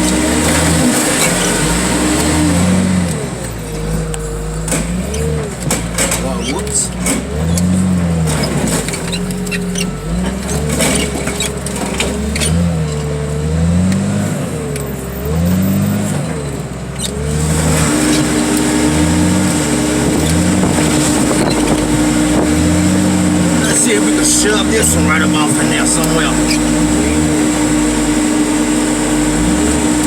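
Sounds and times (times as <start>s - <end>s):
diesel engine revving: 0.0s - 30.0s
hydraulic whine: 0.0s - 30.0s
metal clanks: 3.0s - 14.1s.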